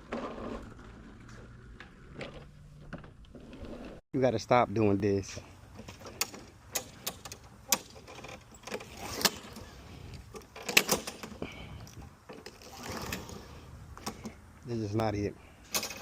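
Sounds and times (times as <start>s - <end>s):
lawn mower pull-start cord yanked: 5.7s - 14.4s, 15.6s - 16.0s
rattles and clicks: 5.7s - 14.4s, 15.6s - 16.0s.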